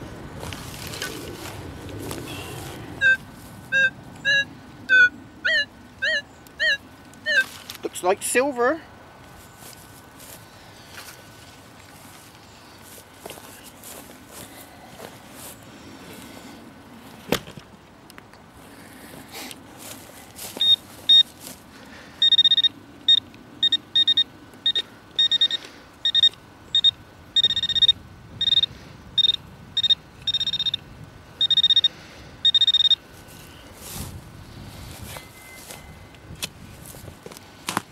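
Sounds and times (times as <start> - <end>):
metal detector beeping: 3.0 - 7.5, 20.5 - 21.4, 22.2 - 30.8, 31.4 - 33.0, 35.0 - 36.3.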